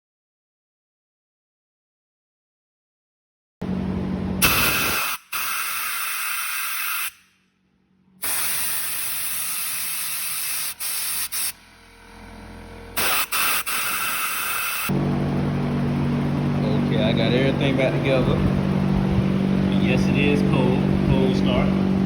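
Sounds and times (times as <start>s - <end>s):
pressurised spray hissing: 4.4s - 7.2s, 8.2s - 11.6s, 13.0s - 14.9s.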